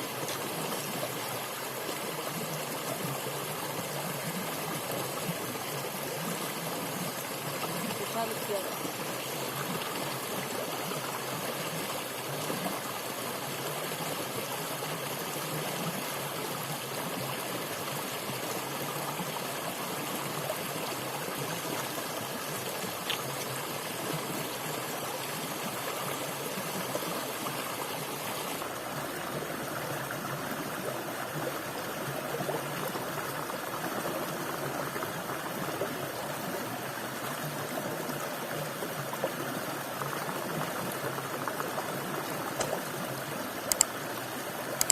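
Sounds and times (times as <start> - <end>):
stream water running: 0.0 - 44.9.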